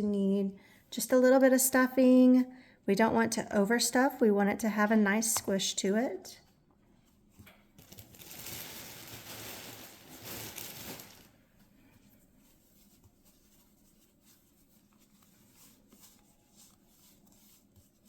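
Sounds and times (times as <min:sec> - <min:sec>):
faint handling rustles: 0:06.9 - 0:18.0
stuffing tearing rustle: 0:07.8 - 0:11.4.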